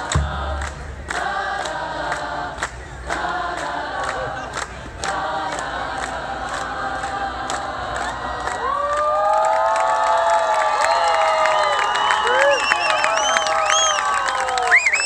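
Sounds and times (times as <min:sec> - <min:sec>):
low bass line: 0:00.0 - 0:03.0
steady drum beat: 0:00.0 - 0:03.2
marching band playing chords: 0:00.0 - 0:03.8.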